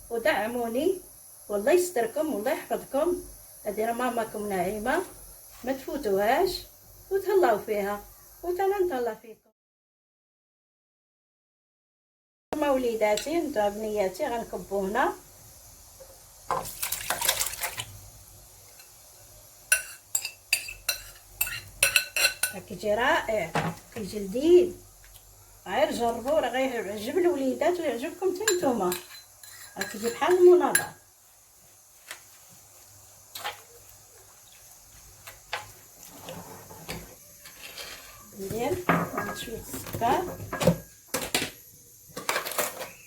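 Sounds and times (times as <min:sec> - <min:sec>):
lemonade pouring and splashing: 0:16.6 - 0:18.0
utensils clicking against a pot: 0:19.7 - 0:22.6.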